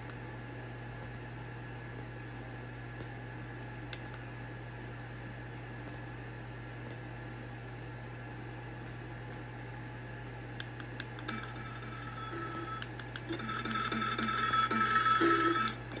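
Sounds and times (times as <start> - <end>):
low hum with hiss: 0.0 - 16.0.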